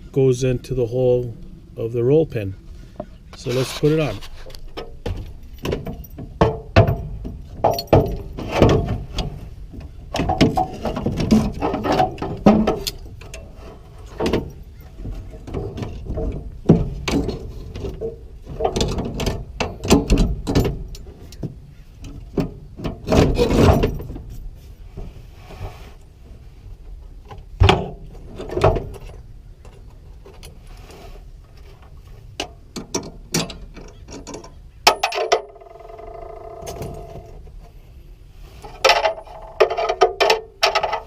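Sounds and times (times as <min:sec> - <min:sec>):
metal parts clanking and scraping: 0:03.4 - 0:21.3, 0:22.1 - 0:24.5, 0:31.6 - 0:37.7, 0:38.5 - 0:41.0.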